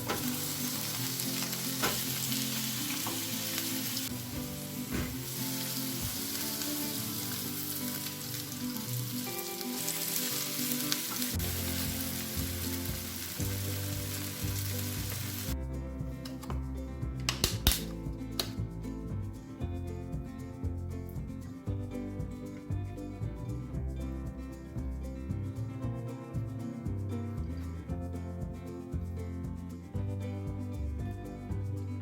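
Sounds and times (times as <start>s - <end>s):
food sizzling in a pan: 0.0s - 15.6s
soft background music: 0.0s - 32.0s.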